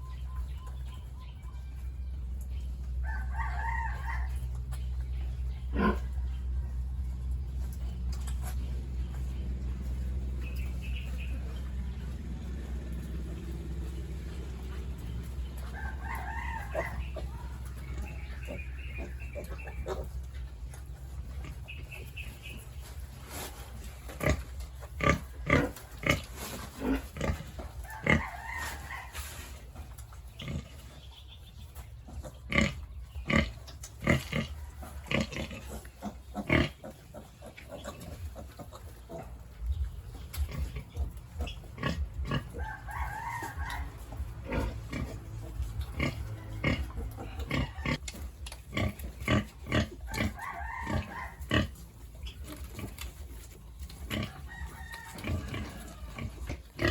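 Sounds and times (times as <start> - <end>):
steady low hum: 4.2 - 28.4
pigs squealing: 15.8 - 20.3, 24.2 - 29.3, 40.4 - 56.9.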